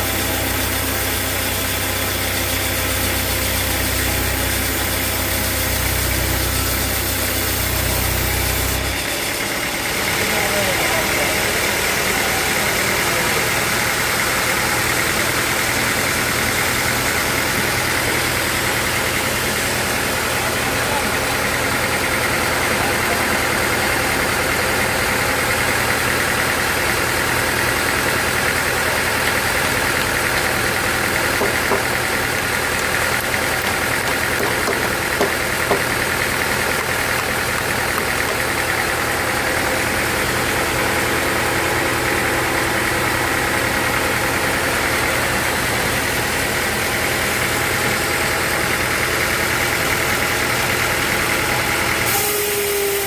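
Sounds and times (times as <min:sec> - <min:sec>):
sawmill machinery droning: 0:00.0 - 0:53.0.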